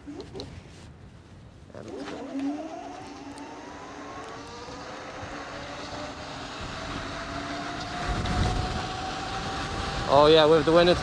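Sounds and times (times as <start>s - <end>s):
electric scooter motor whining: 1.8s - 11.0s
wind rushing on microphone: 2.9s - 11.0s.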